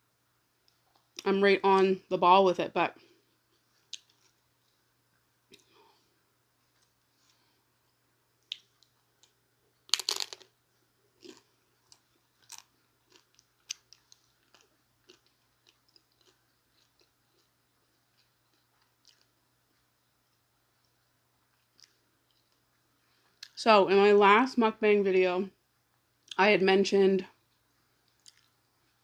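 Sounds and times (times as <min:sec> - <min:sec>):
chewing mouth clicks: 0:08.4 - 0:09.4, 0:27.5 - 0:28.6
person biting into taco: 0:09.9 - 0:10.5.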